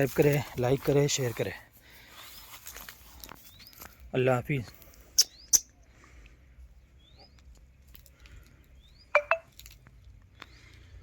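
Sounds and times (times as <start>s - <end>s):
small bird chirping: 3.4s - 4.0s, 5.1s - 5.8s, 6.8s - 7.7s, 8.6s - 10.9s.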